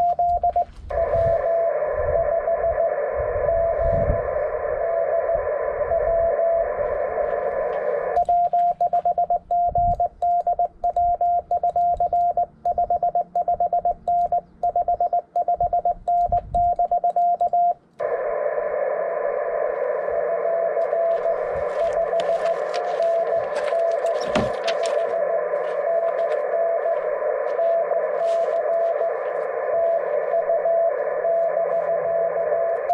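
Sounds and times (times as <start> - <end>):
morse code beeps: 0.0 - 4.2, 8.2 - 17.8, 20.3 - 32.9
radio band hiss: 0.0 - 9.1, 18.0 - 32.9
faint morse signal: 0.0 - 32.9.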